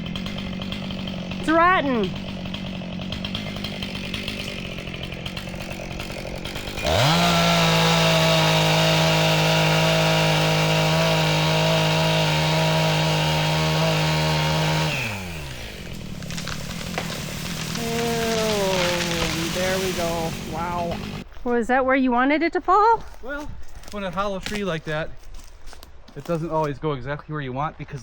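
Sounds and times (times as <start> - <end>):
chainsaw cutting into wood: 0.0 - 21.3
chainsaw idling and revving: 0.0 - 21.3.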